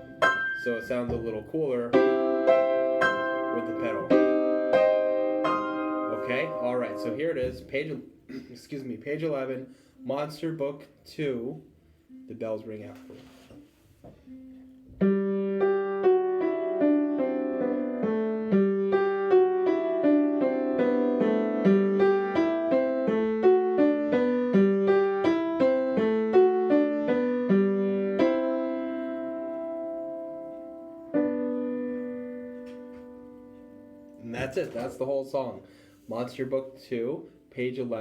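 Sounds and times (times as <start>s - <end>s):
piano playing: 0.0s - 7.7s, 14.2s - 35.1s.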